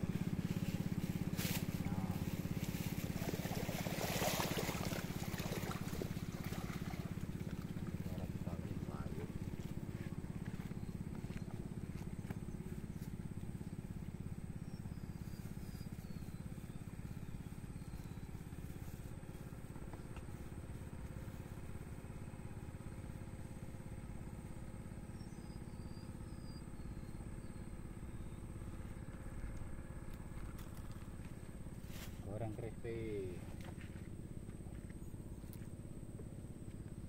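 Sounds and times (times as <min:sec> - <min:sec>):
small engine droning: 0:00.0 - 0:37.0
bird chirping: 0:14.6 - 0:18.4, 0:25.1 - 0:29.1.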